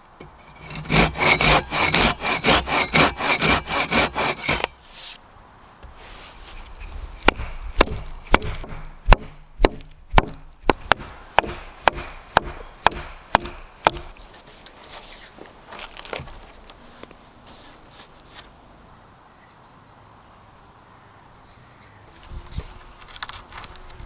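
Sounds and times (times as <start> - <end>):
axe chopping wood: 0.7 - 4.8, 7.2 - 14.2.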